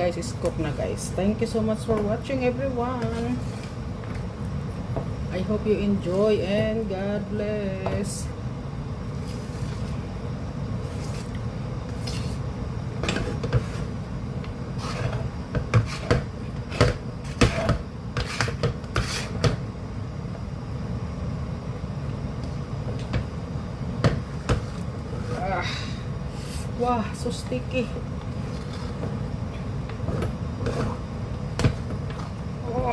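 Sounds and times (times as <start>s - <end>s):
steady low hum: 0.0s - 32.9s
utensil scraping a pan: 10.8s - 12.4s, 13.0s - 14.0s, 14.7s - 19.6s, 30.1s - 31.1s.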